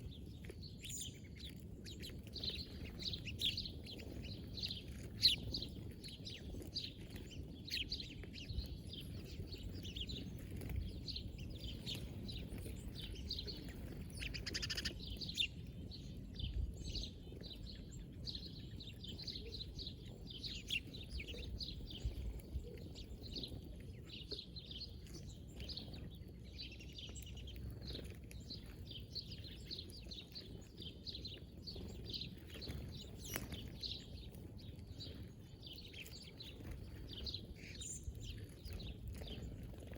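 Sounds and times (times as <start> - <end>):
wild birds chirping: 0.0 - 39.9.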